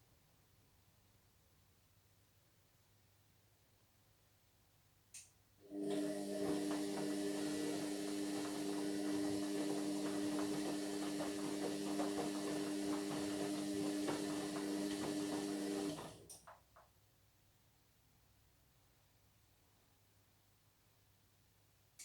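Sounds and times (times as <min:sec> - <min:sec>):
washing machine humming: 0:05.6 - 0:16.4
water hissing and rattling: 0:05.9 - 0:16.2.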